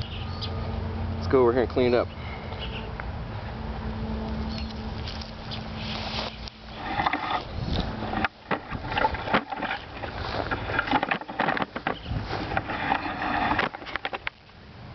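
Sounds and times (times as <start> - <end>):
dry stalk crackling and snapping: 4.5 - 12.9.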